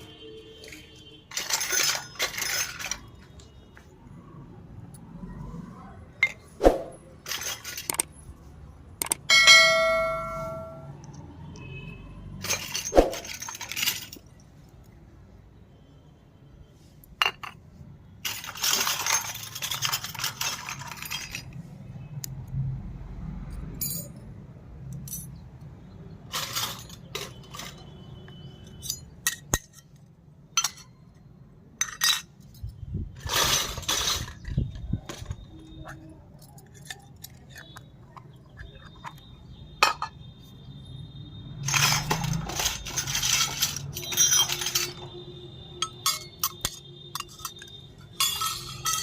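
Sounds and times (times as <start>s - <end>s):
toy pieces clinking and tapping: 9.0s - 11.2s, 35.1s - 39.3s, 41.6s - 45.1s.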